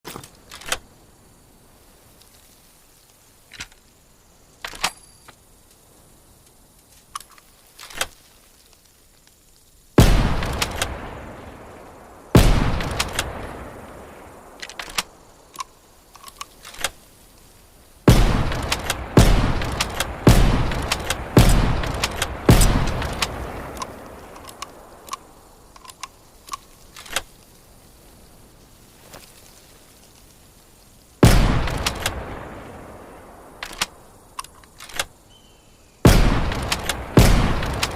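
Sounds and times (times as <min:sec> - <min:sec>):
rifle shots with echo: 0:10.0 - 0:11.2, 0:12.4 - 0:13.6, 0:18.1 - 0:24.0, 0:31.2 - 0:32.5, 0:36.1 - 0:37.9
faint sharp clicks: 0:18.6 - 0:27.5, 0:33.6 - 0:35.2.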